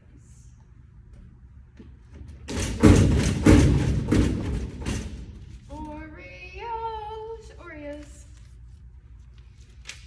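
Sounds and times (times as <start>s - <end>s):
heavy thumps: 1.8s - 5.9s.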